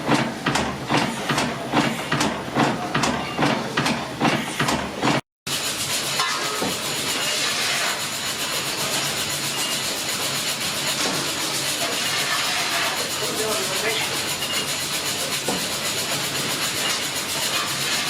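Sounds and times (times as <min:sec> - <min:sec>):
steam engine exhaust beating: 0:00.0 - 0:18.0
steam hissing: 0:05.5 - 0:18.0.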